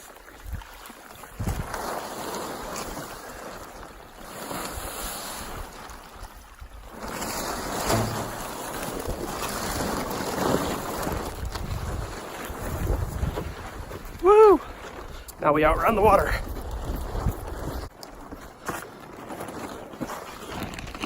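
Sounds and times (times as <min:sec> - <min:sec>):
water rushing in ditch: 0:00.0 - 0:17.9
wind buffeting microphone: 0:01.4 - 0:01.7, 0:10.8 - 0:17.9.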